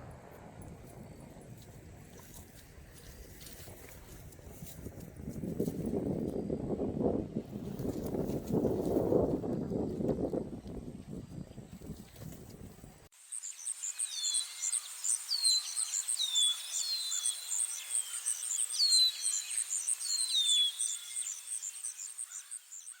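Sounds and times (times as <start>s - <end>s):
low outdoor rumble: 0.0s - 13.1s.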